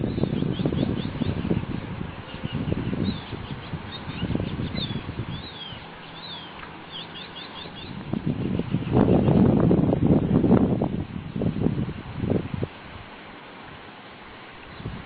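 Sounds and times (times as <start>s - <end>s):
birds chirping: 0.0s - 9.4s
low rumbling background noise: 0.0s - 15.0s.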